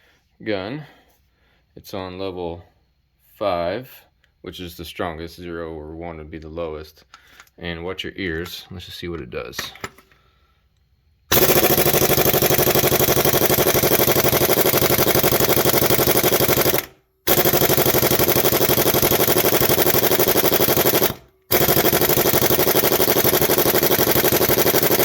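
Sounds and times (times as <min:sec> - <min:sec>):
air impact wrench hammering: 0:11.3 - 0:25.0.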